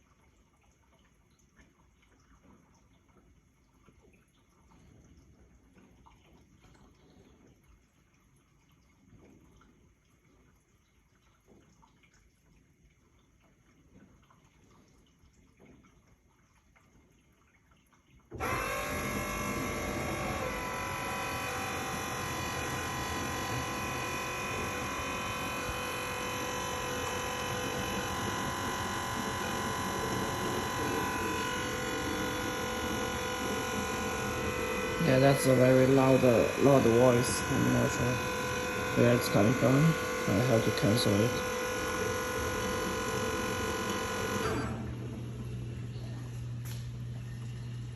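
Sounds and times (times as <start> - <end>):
faint water sounds: 0.0 - 47.9
dishwasher motor drone: 18.3 - 47.9.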